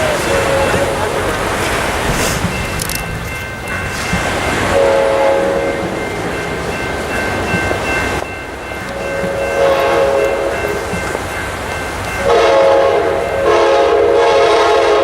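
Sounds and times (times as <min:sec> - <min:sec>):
locomotive air horn: 0:00.0 - 0:01.3, 0:04.8 - 0:06.0, 0:08.9 - 0:10.8, 0:12.2 - 0:15.0
moving train rumble: 0:00.0 - 0:15.0.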